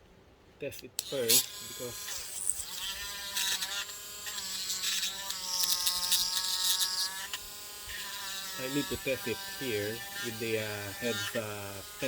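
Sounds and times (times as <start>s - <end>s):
rotary tool whining: 1.0s - 12.0s.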